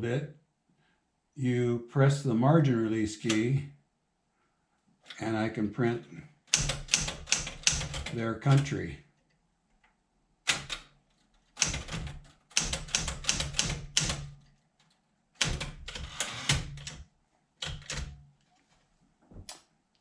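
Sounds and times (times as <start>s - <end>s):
manual typewriter typing: 6.5s - 8.8s, 10.5s - 10.9s, 11.5s - 17.0s, 17.6s - 18.2s.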